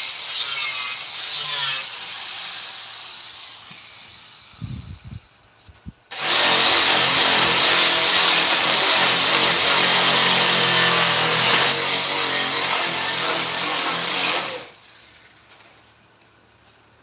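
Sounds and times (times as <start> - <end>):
power tool working wood: 6.1 - 15.0.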